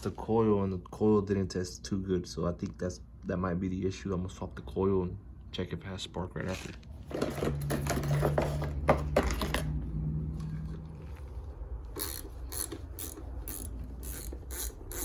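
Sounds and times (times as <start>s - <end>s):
ratchet wrench clicking: 11.9s - 15.0s.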